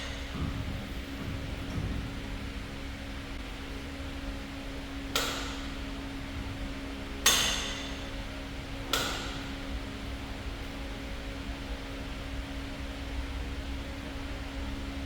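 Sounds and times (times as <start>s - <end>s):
steady low hum: 0.0s - 15.0s
sharp metallic knocks: 7.2s - 8.1s.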